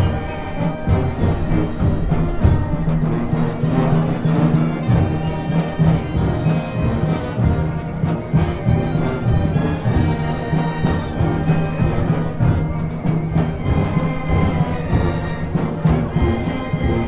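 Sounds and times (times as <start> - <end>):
brass and drum band playing: 0.0 - 17.0.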